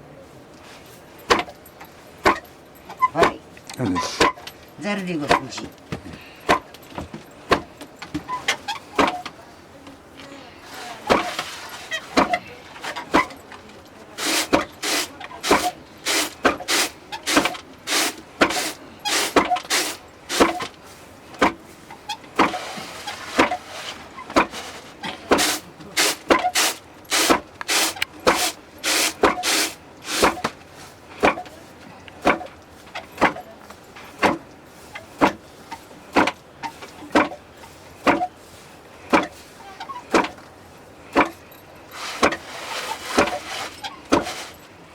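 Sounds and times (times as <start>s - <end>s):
wooden pestle pounding grain: 4.0s - 4.5s, 5.2s - 5.6s, 6.5s - 6.7s, 11.0s - 13.3s, 14.2s - 20.7s, 21.4s - 21.6s, 22.4s - 23.7s, 24.3s - 24.6s, 25.3s - 30.6s, 34.2s - 34.4s, 36.1s - 36.4s, 38.0s - 38.3s, 39.1s - 39.4s, 40.1s - 40.4s, 42.0s - 44.5s.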